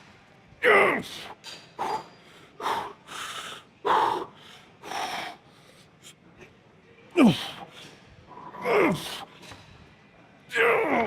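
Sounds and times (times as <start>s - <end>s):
man breathing heavily: 1.8s - 6.0s.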